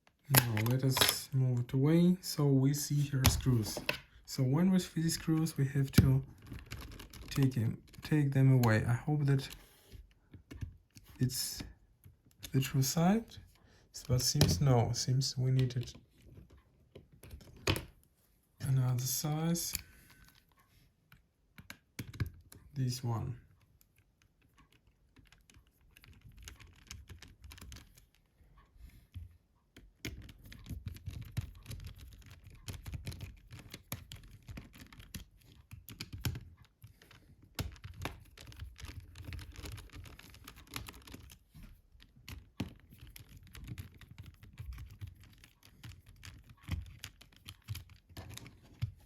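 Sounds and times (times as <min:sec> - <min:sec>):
phone handling: 0:00.3 - 0:01.3.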